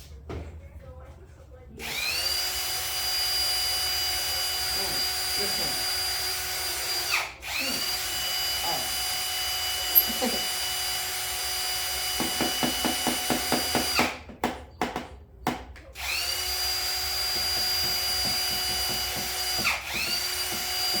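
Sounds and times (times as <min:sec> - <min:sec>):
power drill motor whining: 0:01.8 - 0:12.2, 0:16.0 - 0:21.0.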